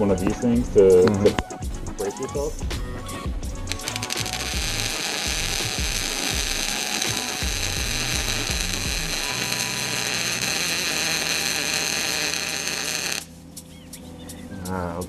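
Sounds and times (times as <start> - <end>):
welding arc crackling: 3.7 - 13.3.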